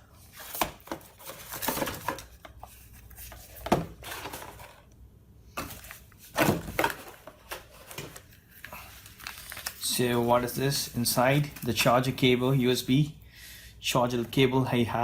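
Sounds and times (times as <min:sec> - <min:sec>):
packaging being handled: 0:05.6 - 0:12.0.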